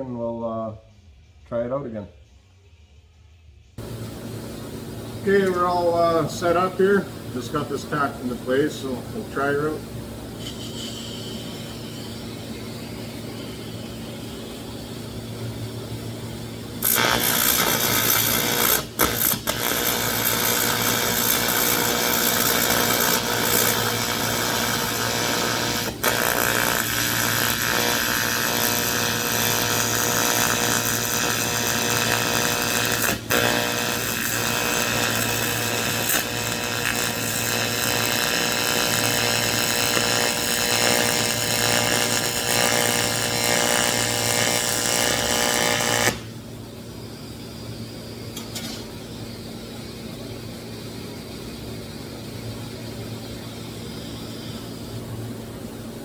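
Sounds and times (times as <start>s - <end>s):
low electrical hum: 0.0s - 56.0s
welder arc buzzing and hissing: 3.8s - 56.0s.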